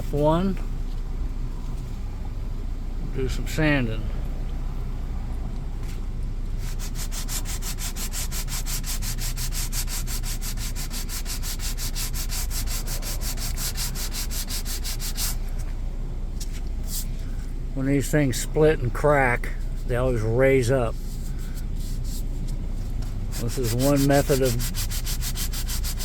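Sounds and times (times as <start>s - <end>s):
sanding scraping strokes: 6.6s - 15.7s, 19.4s - 26.0s.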